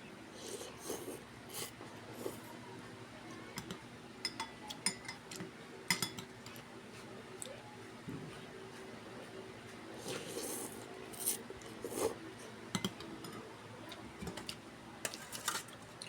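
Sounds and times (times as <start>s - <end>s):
utensils clinking on a dish: 3.6s - 6.6s, 14.2s - 15.8s.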